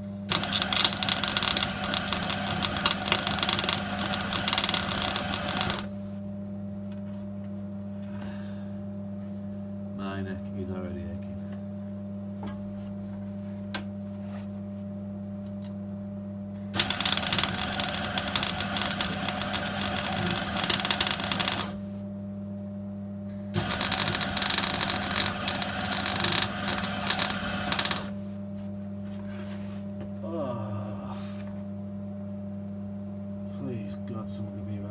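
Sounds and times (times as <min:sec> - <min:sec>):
steady low hum: 0:00.0 - 0:12.4, 0:15.9 - 0:34.9
crackling arc welding: 0:00.3 - 0:06.2, 0:16.8 - 0:22.0, 0:23.6 - 0:28.3.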